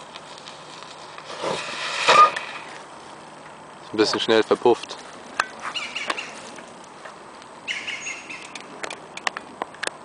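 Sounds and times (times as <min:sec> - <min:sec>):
small clicks and crackles: 0:00.0 - 0:01.4, 0:08.4 - 0:10.0
bird chirping trills: 0:05.7 - 0:06.5, 0:07.6 - 0:08.7.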